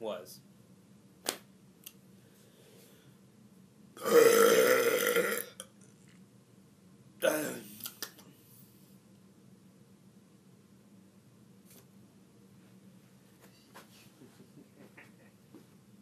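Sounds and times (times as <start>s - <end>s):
man burping: 4.0s - 5.7s, 7.2s - 7.8s.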